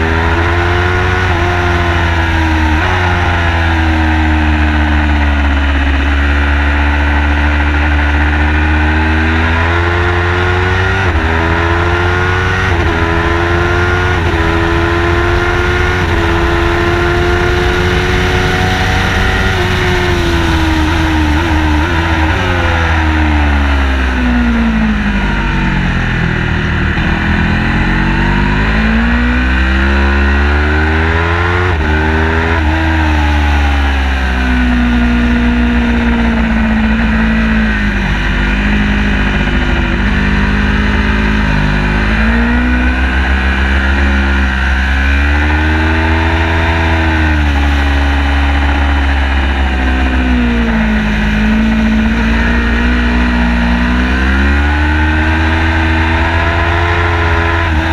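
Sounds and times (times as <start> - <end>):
car engine revving hard: 0.0 - 57.9
road and wind noise: 0.0 - 57.9.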